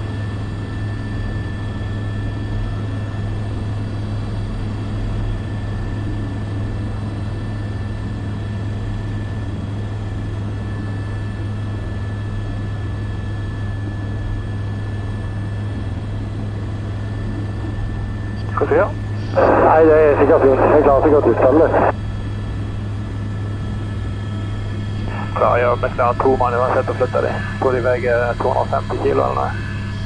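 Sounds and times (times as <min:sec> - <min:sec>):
helicopter rotor drone: 0:00.0 - 0:30.0
thin high whine: 0:18.2 - 0:22.0, 0:24.5 - 0:30.0.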